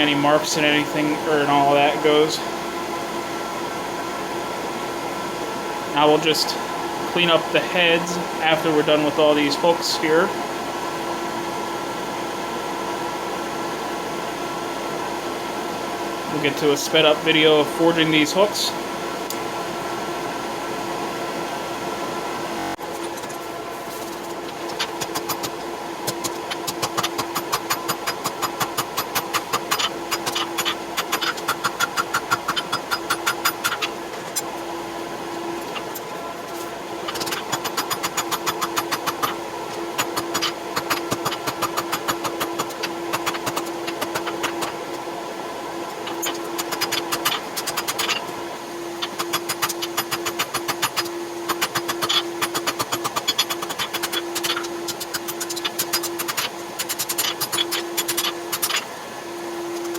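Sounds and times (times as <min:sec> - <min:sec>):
mechanical hum: 0:00.0 - 0:59.9.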